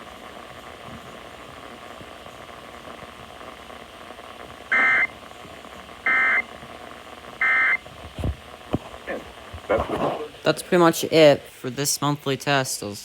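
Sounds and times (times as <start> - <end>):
faint hiss: 0.0 - 13.0
buzzy digital data bursts: 3.4 - 7.8.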